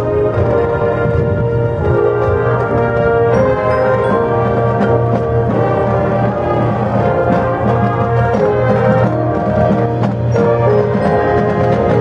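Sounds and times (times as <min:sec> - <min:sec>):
brass sustaining chords: 0:00.0 - 0:12.0
drum and percussion strokes: 0:00.0 - 0:12.0.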